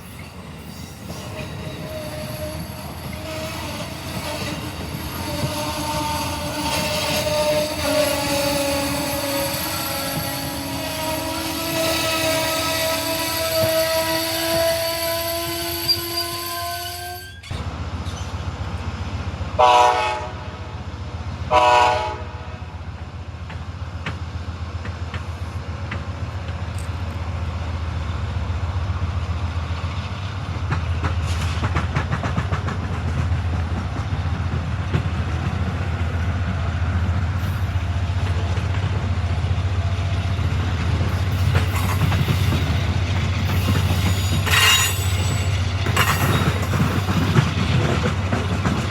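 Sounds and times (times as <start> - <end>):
train rumbling past: 0.0 - 48.9
train horn blasts: 1.8 - 17.5, 19.6 - 20.7, 21.5 - 22.8
wheels clattering on rail joints: 29.9 - 48.9.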